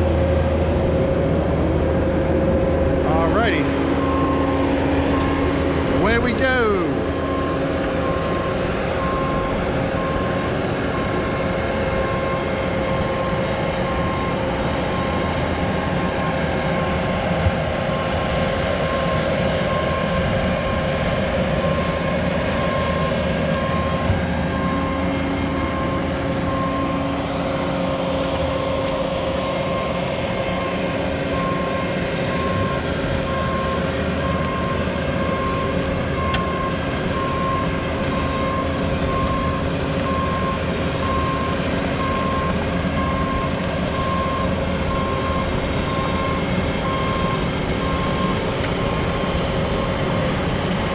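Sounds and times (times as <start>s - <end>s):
heavy machine engine running: 0.0s - 50.9s
backup alarm beeping: 3.0s - 15.4s, 21.7s - 27.8s, 28.4s - 48.5s.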